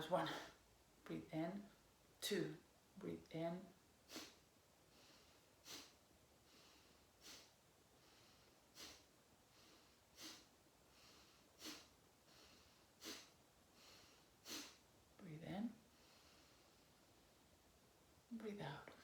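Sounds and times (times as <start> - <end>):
forceful nasal exhalations: 4.1 - 4.4, 5.0 - 14.8
soft in-breaths: 4.1 - 14.8, 15.8 - 17.2.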